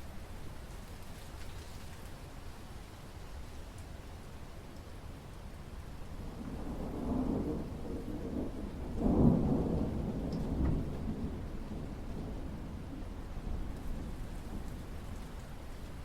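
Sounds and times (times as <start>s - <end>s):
light rain: 0.0s - 16.0s
thunder rumbling: 6.2s - 16.0s.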